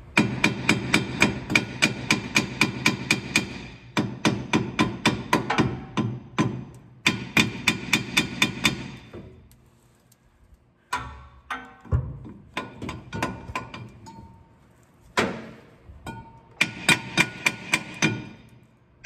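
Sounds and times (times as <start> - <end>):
hammer striking metal: 0.2 - 9.1, 15.2 - 18.5.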